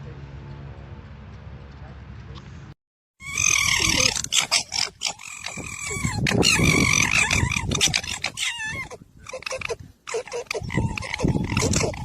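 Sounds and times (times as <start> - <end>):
loud animal calls: 3.2 - 12.0.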